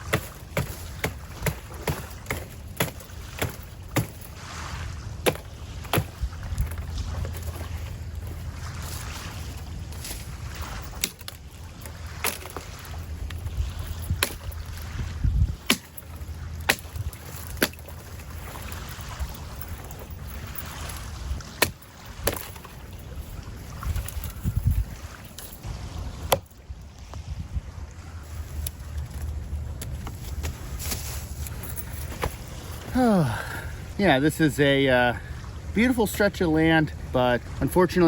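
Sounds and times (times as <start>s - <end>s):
dead branches snapping: 0.0s - 4.4s, 5.2s - 8.3s, 9.9s - 18.9s, 20.4s - 22.6s
wind rumble on microphone: 4.3s - 33.0s
soft rustling: 28.2s - 33.0s.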